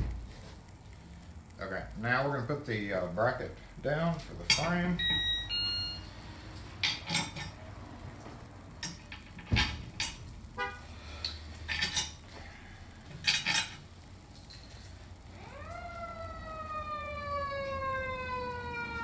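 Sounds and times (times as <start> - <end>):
metallic clanks and clinks: 6.8 - 7.6, 11.6 - 12.2, 13.1 - 14.9.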